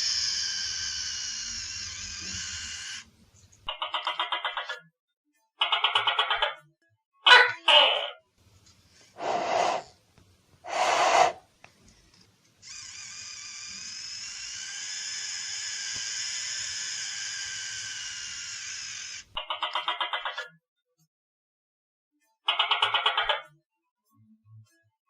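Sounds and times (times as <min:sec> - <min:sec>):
gecko breathy hisses: 0:09.0 - 0:10.0, 0:10.6 - 0:11.5.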